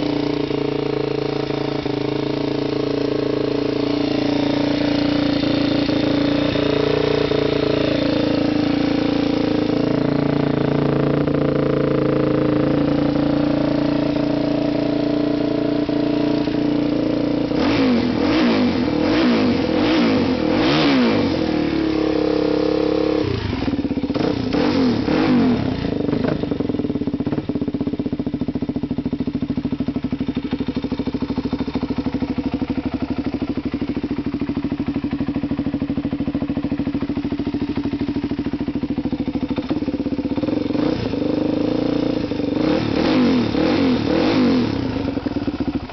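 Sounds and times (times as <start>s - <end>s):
engine revving: 0.0s - 26.7s, 40.4s - 45.9s
motorcycle engine idling: 0.0s - 45.9s.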